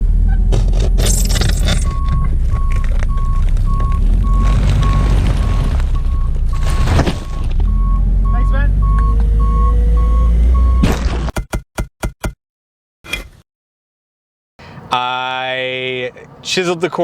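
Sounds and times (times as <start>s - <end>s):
engine low rumble: 0.0s - 10.8s
reversing machine backup alarm beeping: 1.1s - 10.8s.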